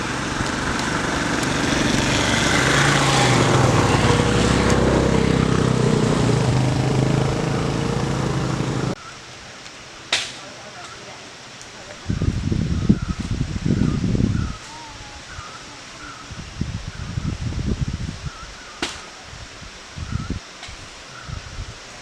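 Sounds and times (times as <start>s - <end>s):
small engine running: 0.0s - 9.0s
steady rushing noise: 0.0s - 9.0s.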